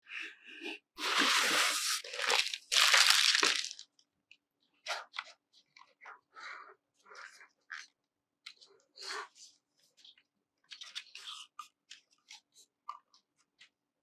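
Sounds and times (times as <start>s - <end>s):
packaging rustling and tearing: 1.0s - 3.8s.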